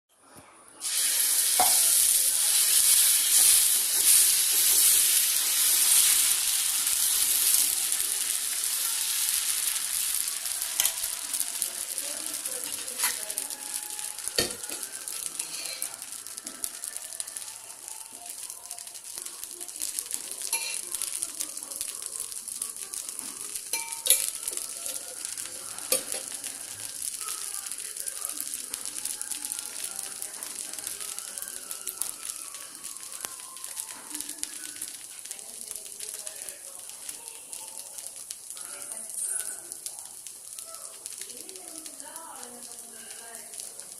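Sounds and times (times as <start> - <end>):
batter sizzling on a griddle: 0.7 - 43.9
utensil clicking against pan: 10.8 - 11.3, 12.4 - 13.4, 19.1 - 31.1.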